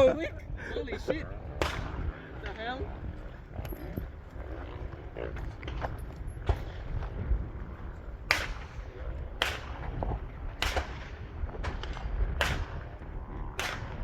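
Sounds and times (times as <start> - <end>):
gunshots with echo: 1.5 - 2.5, 8.2 - 14.0.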